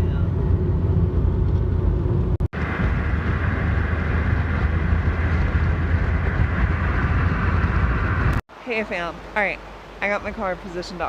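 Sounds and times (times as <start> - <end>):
car driving rumble: 0.0 - 8.4.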